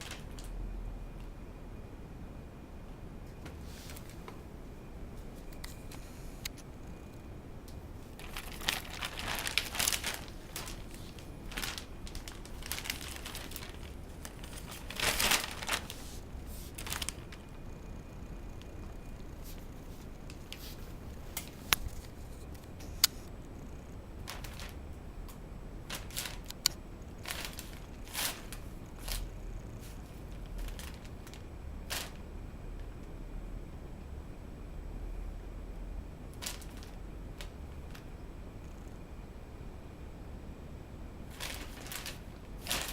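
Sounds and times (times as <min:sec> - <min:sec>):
kitten rustling in a basket: 0:03.5 - 0:04.4, 0:08.0 - 0:17.6, 0:19.3 - 0:23.3, 0:24.2 - 0:24.8, 0:25.9 - 0:32.2, 0:36.3 - 0:38.1, 0:41.3 - 0:42.9.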